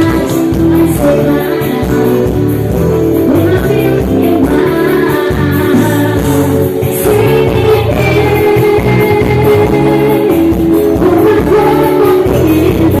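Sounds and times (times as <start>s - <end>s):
band playing a song: 0.0s - 13.0s
person singing: 0.0s - 13.0s.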